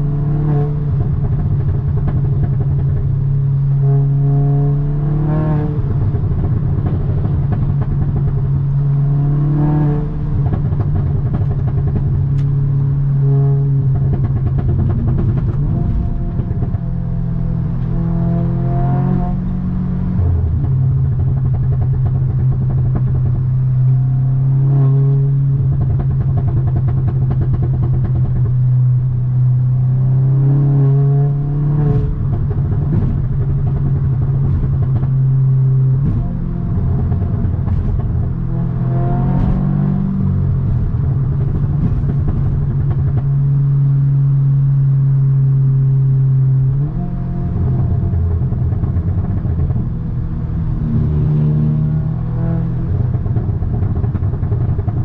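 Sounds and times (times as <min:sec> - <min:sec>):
car engine and exhaust revving: 0:00.0 - 0:55.0.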